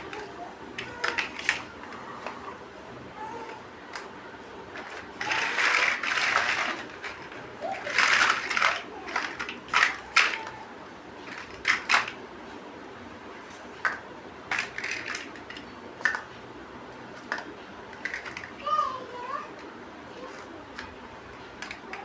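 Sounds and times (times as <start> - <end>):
plastic bricks clicking: 4.8 - 10.6, 11.3 - 12.2, 13.8 - 16.2.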